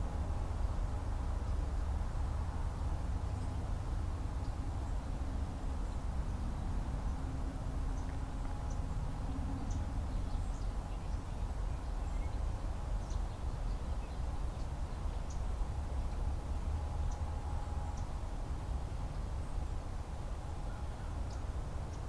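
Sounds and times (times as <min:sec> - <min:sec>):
low outdoor rumble: 0:00.0 - 0:22.0
distant songbirds chirping: 0:02.5 - 0:22.0.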